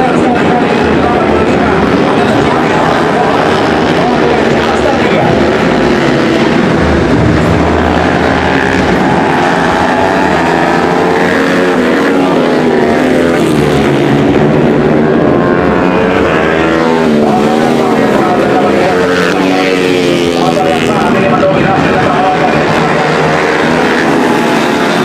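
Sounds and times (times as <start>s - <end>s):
motorbikes revving: 0.0s - 25.0s.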